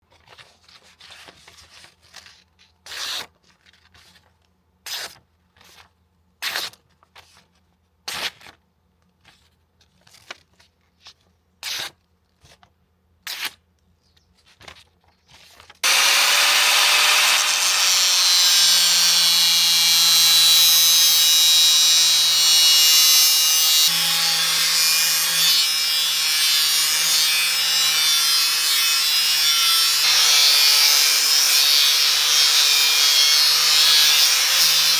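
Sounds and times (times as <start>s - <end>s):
hand tool strokes: 15.8s - 27.3s
power tool whining: 15.8s - 34.9s.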